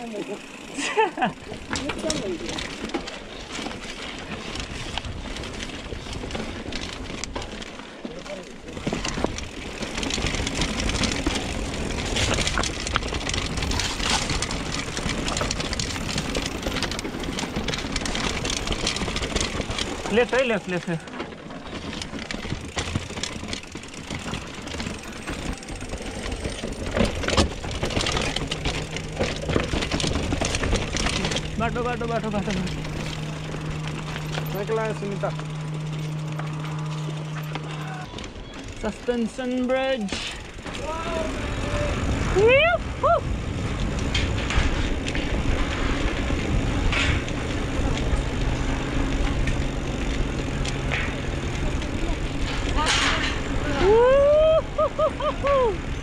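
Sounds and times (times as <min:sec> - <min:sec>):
bike frame and chain clattering: 0:00.0 - 0:56.0
low rumble of tyres rolling: 0:00.0 - 0:56.0.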